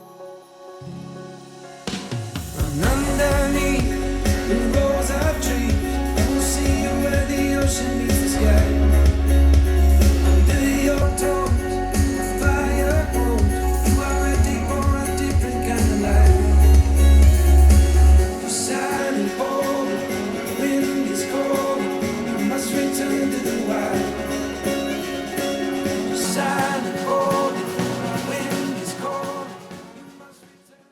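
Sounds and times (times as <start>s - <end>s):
song with guitar on loudspeaker: 0.9s - 30.8s
deep bass: 2.6s - 18.3s.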